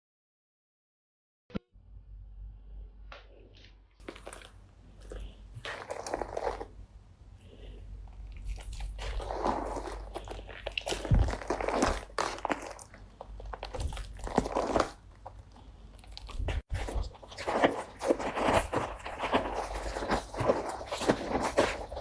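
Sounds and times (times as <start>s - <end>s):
slime crackling and popping: 4.0s - 6.8s, 8.1s - 22.0s.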